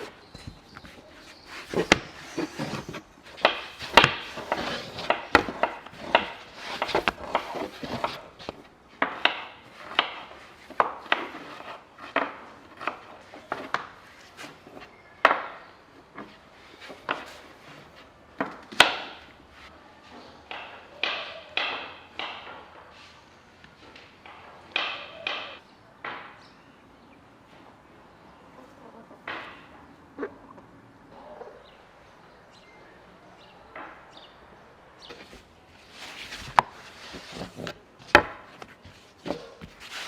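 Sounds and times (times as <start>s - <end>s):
short scrape: 1.2s - 5.2s.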